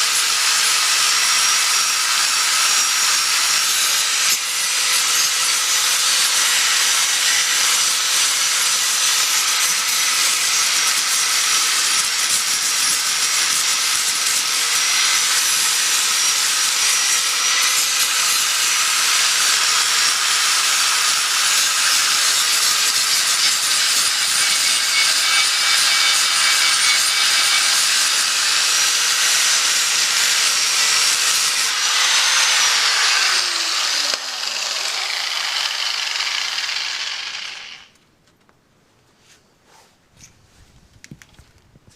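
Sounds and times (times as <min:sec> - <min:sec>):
power tool hissing and whining: 0:00.0 - 0:38.0.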